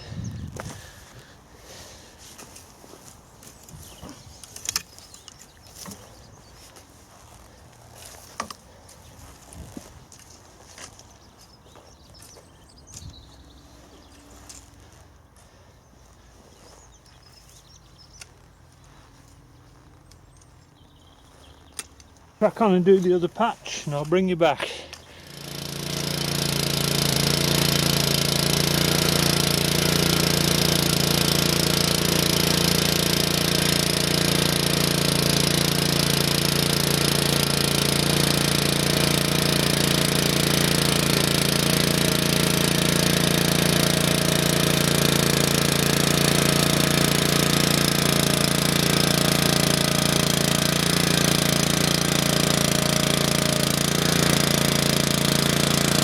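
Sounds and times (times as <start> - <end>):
rotovator engine running: 16.0 - 56.0.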